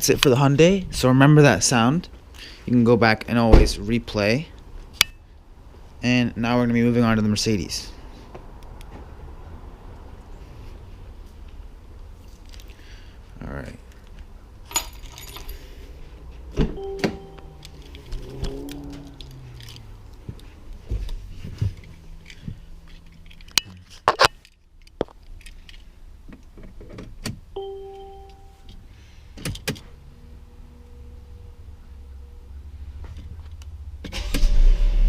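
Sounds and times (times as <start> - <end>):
keys jangling: 14.7 - 15.8, 17.2 - 19.9
two-tone electronic chime: 16.8 - 17.7, 27.6 - 28.7
low steady rumble: 29.9 - 35.0.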